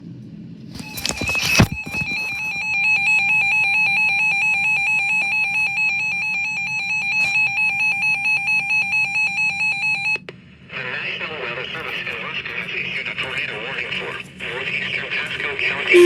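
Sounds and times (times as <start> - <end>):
handling clatter: 0.8 - 3.0
radio alert alarm beeping: 0.8 - 10.2.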